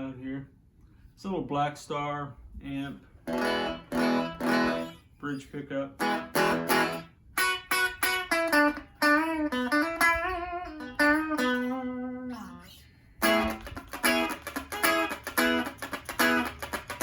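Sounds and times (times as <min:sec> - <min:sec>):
electric guitar chords and licks: 0:03.2 - 0:05.0, 0:06.0 - 0:12.6, 0:13.2 - 0:17.0.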